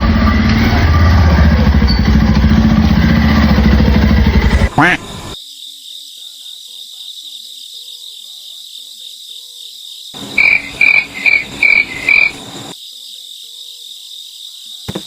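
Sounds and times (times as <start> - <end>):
frog croaking: 4.6 - 15.0
crickets chirping: 5.3 - 15.0.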